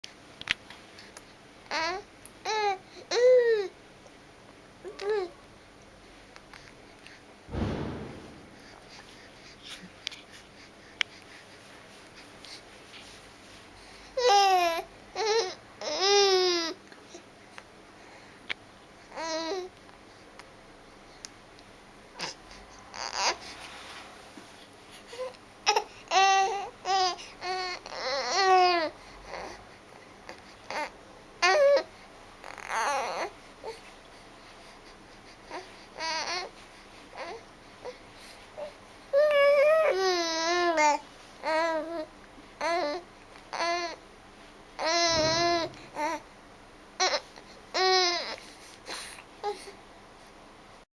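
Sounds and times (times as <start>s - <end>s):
baby babbling: 44.8s - 46.2s, 47.8s - 48.4s.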